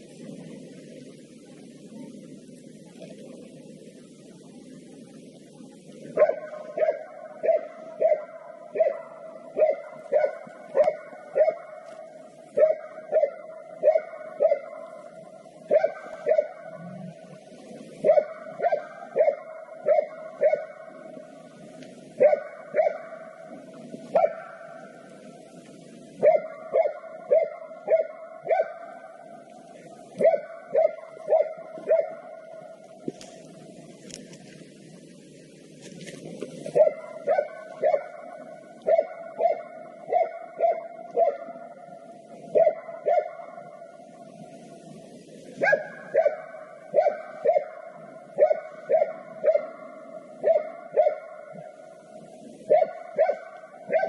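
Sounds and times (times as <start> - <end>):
dog barking: 6.2 - 14.9, 15.7 - 16.8, 18.0 - 20.9, 22.2 - 23.3, 24.1 - 24.8, 26.2 - 29.0, 30.2 - 32.4, 36.8 - 41.6, 42.5 - 43.7, 45.6 - 51.7, 52.7 - 54.0.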